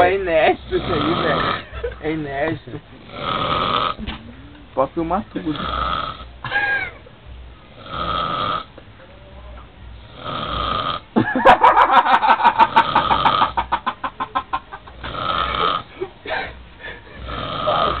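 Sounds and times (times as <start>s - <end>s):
man snoring heavily: 0.6s - 1.6s, 3.0s - 4.0s, 5.4s - 6.3s, 7.7s - 8.7s, 10.0s - 11.1s, 12.6s - 13.7s, 15.0s - 15.9s, 17.2s - 18.0s.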